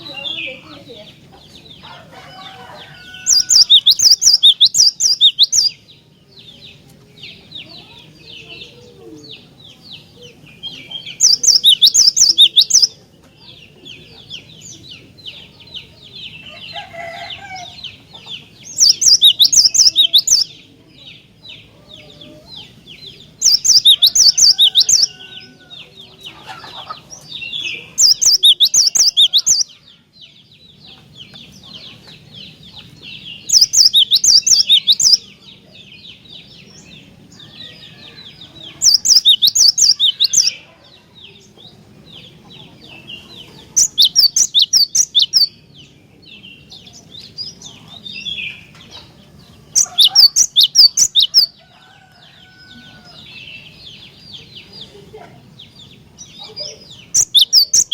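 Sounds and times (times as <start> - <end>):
high bird twittering: 0.0 - 6.6, 7.2 - 20.7, 21.5 - 29.9, 31.2 - 35.3, 36.0 - 40.7, 42.2 - 45.8, 49.6 - 55.0, 55.6 - 57.9
bird singing rapid high notes: 3.2 - 5.8, 10.8 - 13.0, 18.6 - 20.6, 23.2 - 25.2, 27.6 - 29.7, 33.2 - 35.2, 38.8 - 40.6, 43.8 - 45.6, 49.7 - 51.5, 57.0 - 57.9.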